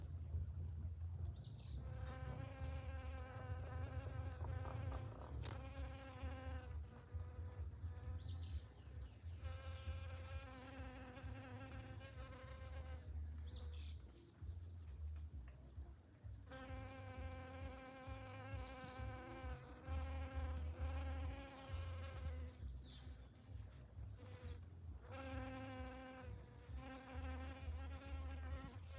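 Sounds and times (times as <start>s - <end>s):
bees buzzing: 1.8s - 8.6s, 9.3s - 13.4s, 16.5s - 23.1s, 24.2s - 28.9s.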